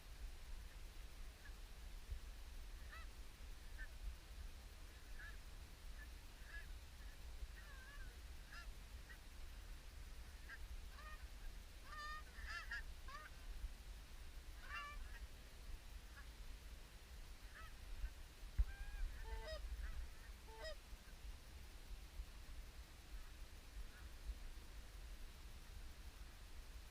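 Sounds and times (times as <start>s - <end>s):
low steady rumble: 0.0s - 26.9s
geese honking: 2.8s - 3.1s, 6.0s - 9.2s, 10.2s - 13.4s, 14.6s - 15.2s, 17.4s - 21.2s.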